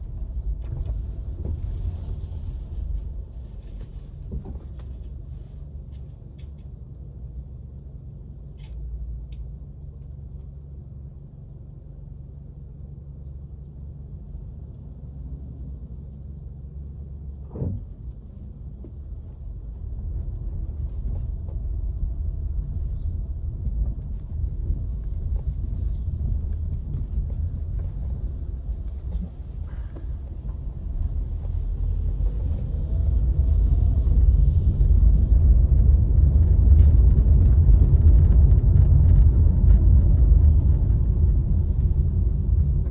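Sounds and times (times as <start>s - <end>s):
car driving rumble: 0.0s - 42.9s.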